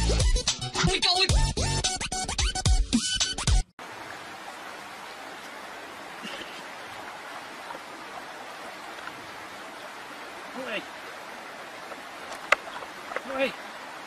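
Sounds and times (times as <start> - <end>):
music: 0.0 - 3.7.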